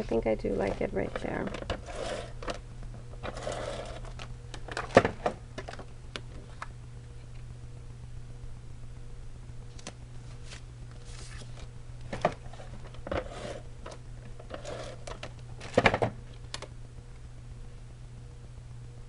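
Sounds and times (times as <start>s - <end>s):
steady low hum: 0.0s - 19.0s
paper rustling: 9.7s - 13.6s.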